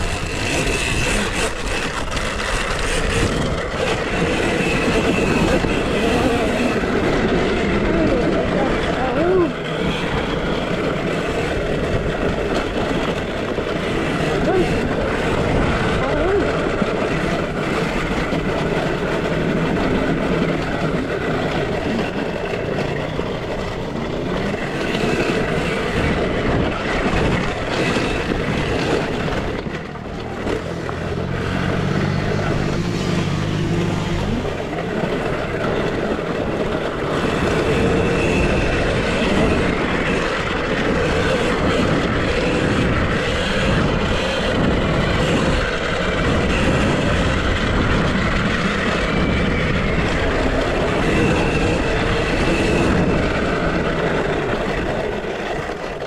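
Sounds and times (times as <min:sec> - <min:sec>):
electric dirt bike riding: 0:00.0 - 0:56.0
wind rushing: 0:00.0 - 0:56.0
low engine-like hum: 0:29.6 - 0:36.2.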